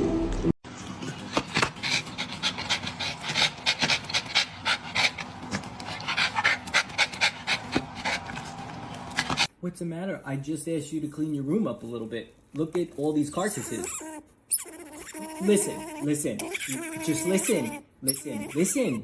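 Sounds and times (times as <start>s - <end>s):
dog panting: 0.7s - 9.5s.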